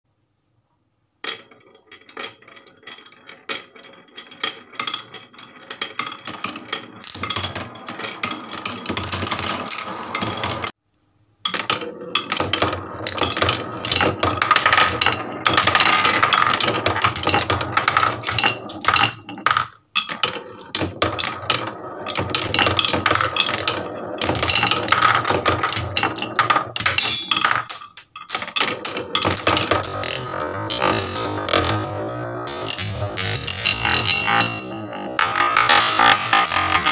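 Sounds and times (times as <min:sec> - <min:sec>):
marbles rolling down wooden run: 0:01.2 - 0:10.8, 0:11.4 - 0:36.9.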